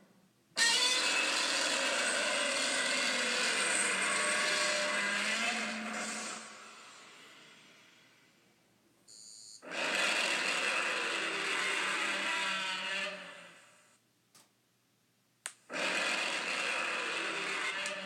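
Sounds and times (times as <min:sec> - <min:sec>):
monster rasping cry: 0:00.6 - 0:06.8, 0:09.7 - 0:13.5, 0:15.7 - 0:18.0.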